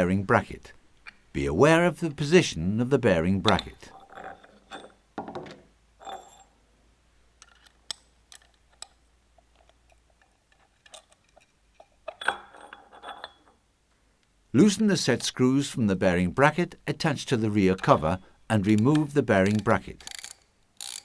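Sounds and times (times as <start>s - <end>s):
metallic clicks and clinks: 6.0s - 6.5s, 7.4s - 13.6s, 17.5s - 21.0s.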